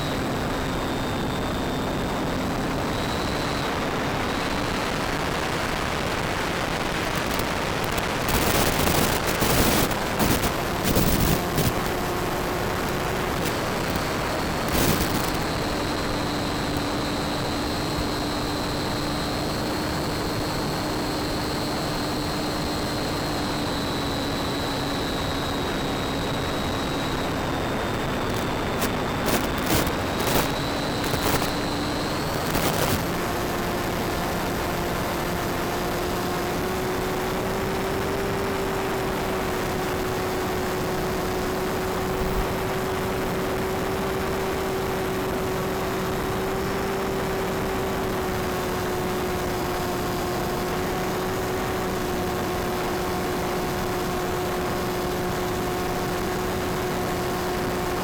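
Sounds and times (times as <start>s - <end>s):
model plane motor whine: 0.0s - 58.0s
constant hiss: 4.0s - 36.2s
sharp crackles: 5.5s - 17.0s, 27.8s - 33.5s.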